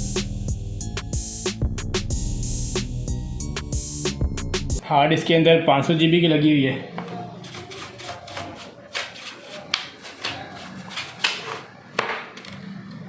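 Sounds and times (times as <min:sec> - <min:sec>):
plastic and metal scraping: 0:07.0 - 0:12.6.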